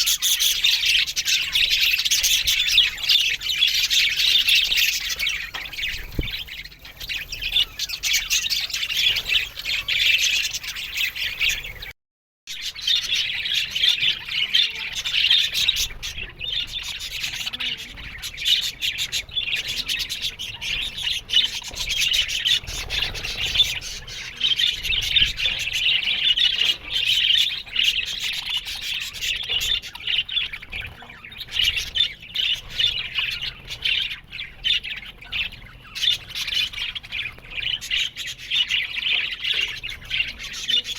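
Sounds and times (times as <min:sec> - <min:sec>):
budgerigars chattering: 0:00.0 - 0:11.9, 0:12.5 - 0:40.9.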